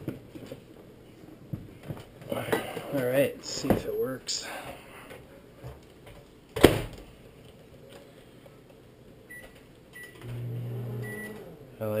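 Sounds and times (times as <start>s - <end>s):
microwave humming: 10.0s - 12.0s
short keypad beeps: 11.0s - 11.4s.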